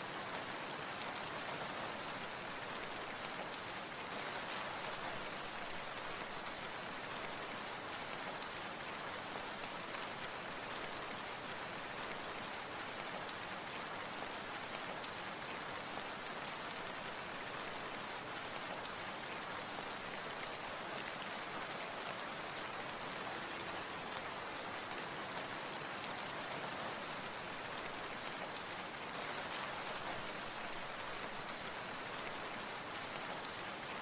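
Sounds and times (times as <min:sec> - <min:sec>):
steady rain: 0:00.0 - 0:34.0.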